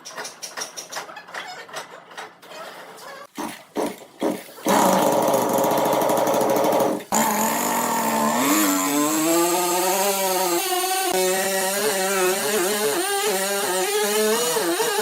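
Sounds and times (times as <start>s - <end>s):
saw cutting wood: 3.2s - 15.0s
machine saw running: 3.8s - 15.0s.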